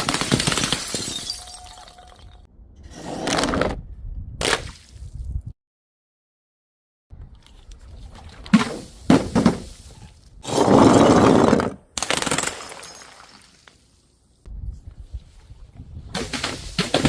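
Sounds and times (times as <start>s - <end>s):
glass breaking: 0.0s - 2.4s, 12.1s - 13.6s
glass tinkling: 1.0s - 2.4s.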